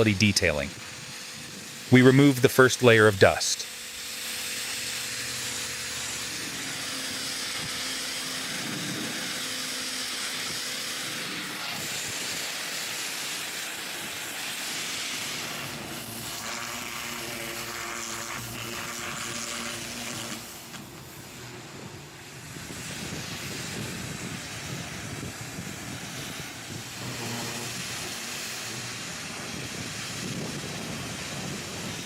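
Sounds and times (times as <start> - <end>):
pressure washer spraying water: 0.0 - 32.0
faint machine hum: 15.3 - 32.0.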